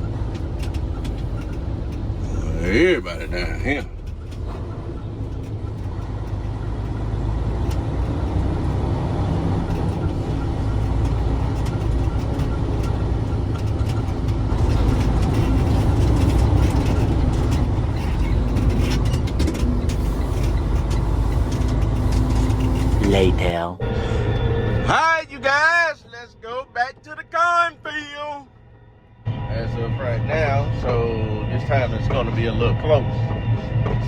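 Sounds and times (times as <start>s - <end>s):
truck engine pulling away: 0.0s - 27.7s.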